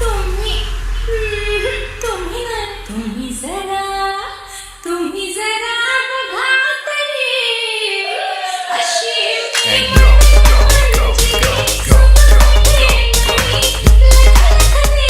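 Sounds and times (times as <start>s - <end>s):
woman singing: 0.0s - 15.0s
thin low bass: 9.7s - 15.0s.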